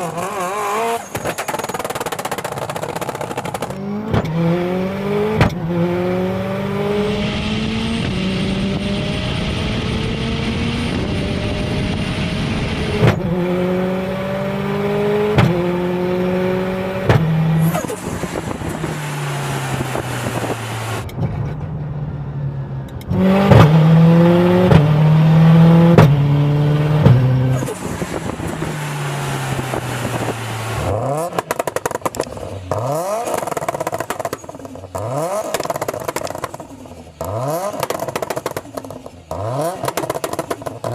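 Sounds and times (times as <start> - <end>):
car engine accelerating hard: 0.0 - 40.9
exhaust cracks and crackles: 1.0 - 3.8, 27.5 - 40.9.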